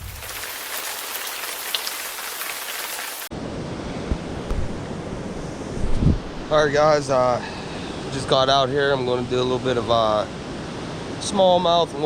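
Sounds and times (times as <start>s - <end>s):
heavy rain: 0.0s - 3.3s.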